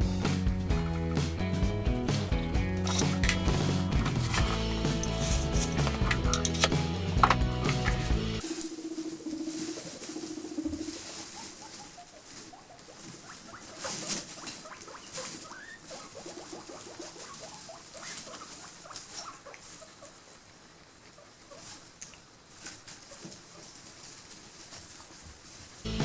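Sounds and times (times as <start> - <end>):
clicks and rustles: 2.8 - 8.4
guinea pigs squeaking: 2.8 - 25.3.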